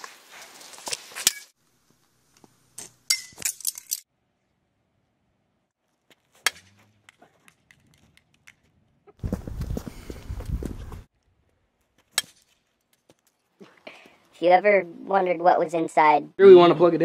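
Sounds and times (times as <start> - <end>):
baseball bat cracking plastic: 6.0 - 8.7, 12.0 - 13.4.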